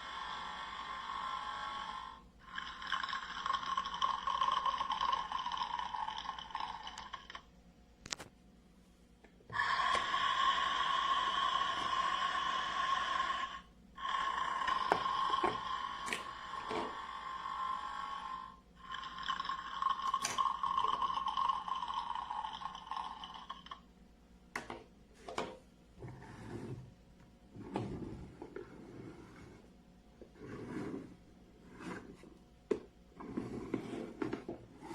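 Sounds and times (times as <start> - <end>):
toy espresso machine buzzing: 0.0 - 7.4, 9.5 - 23.8.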